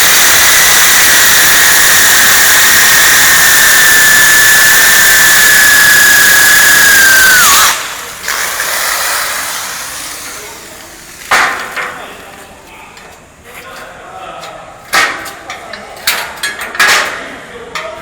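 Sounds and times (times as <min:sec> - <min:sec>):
drill cutting disc grinding steel: 0:00.0 - 0:10.8.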